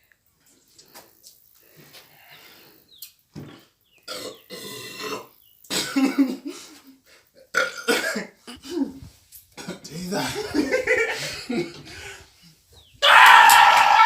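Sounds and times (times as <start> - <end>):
man burping loudly: 4.1 - 6.3, 7.4 - 9.0.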